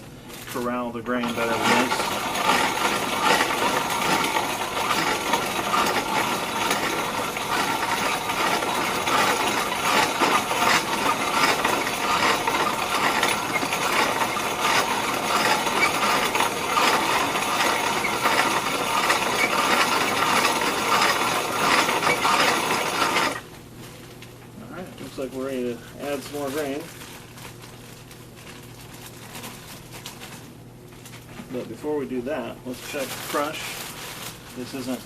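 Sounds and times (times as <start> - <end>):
grain mill grinding kernels: 0.6 - 23.5, 25.0 - 26.9.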